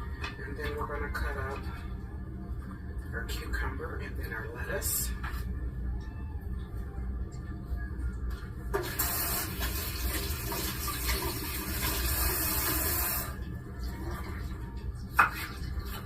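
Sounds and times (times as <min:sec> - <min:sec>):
tap running water: 0:08.8 - 0:14.6, 0:15.2 - 0:16.0.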